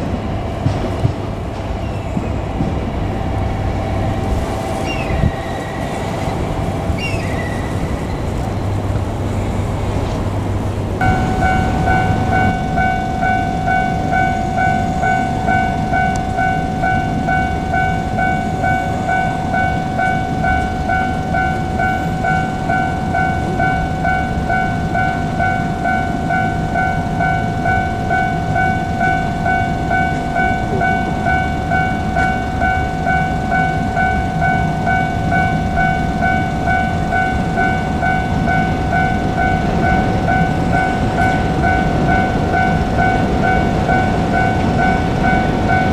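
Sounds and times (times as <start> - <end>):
electric train rumble: 0.0 - 45.9
level crossing warning bell: 10.6 - 45.9.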